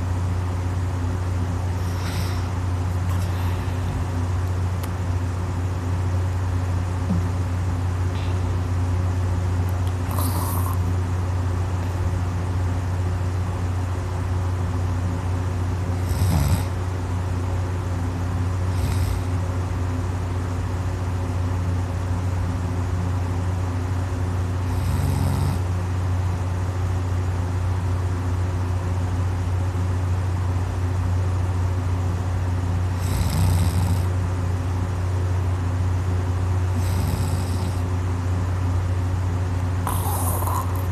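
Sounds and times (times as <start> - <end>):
steady low hum: 0.0 - 40.9
person snoring: 1.7 - 4.0, 10.0 - 10.9, 16.0 - 16.8, 18.7 - 19.4, 24.7 - 25.6, 32.9 - 34.1, 36.7 - 37.9, 39.8 - 40.9
faint breaths: 1.7 - 4.3, 39.9 - 40.9.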